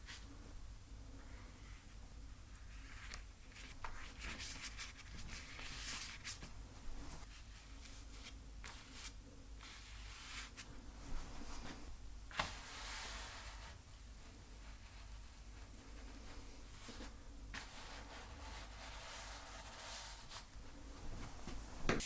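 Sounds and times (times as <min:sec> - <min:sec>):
paint strokes scratching on canvas: 0:11.5 - 0:13.8, 0:14.6 - 0:20.6.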